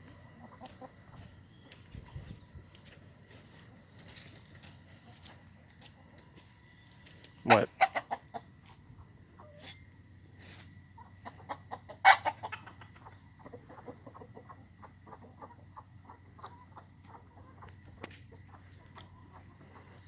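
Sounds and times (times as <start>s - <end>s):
chickens clucking: 0.0s - 20.0s
loud chicken call: 7.4s - 8.2s, 11.9s - 12.8s.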